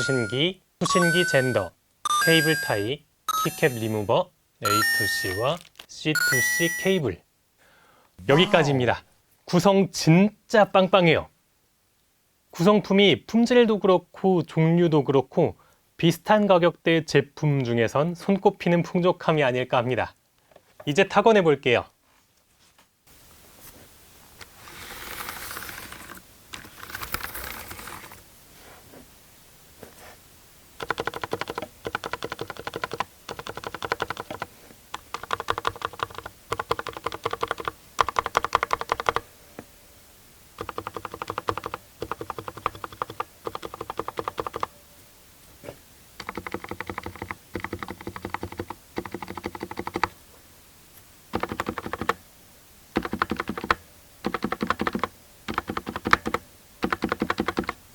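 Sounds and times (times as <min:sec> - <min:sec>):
soft rustling: 0:22.0 - 0:29.2, 0:29.8 - 0:30.3
typing on mechanical keyboard: 0:30.8 - 0:39.2, 0:40.6 - 0:44.7, 0:46.2 - 0:50.1, 0:51.3 - 0:52.2, 0:53.0 - 0:57.8.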